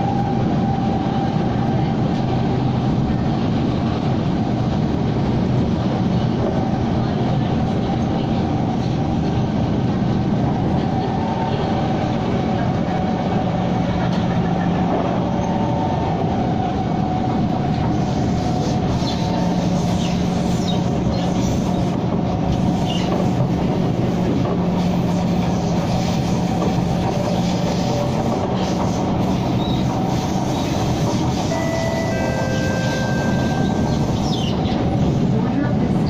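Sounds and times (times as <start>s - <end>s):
train rumbling on track: 0.0s - 36.0s
high-pitched wheel squeals: 31.4s - 34.8s.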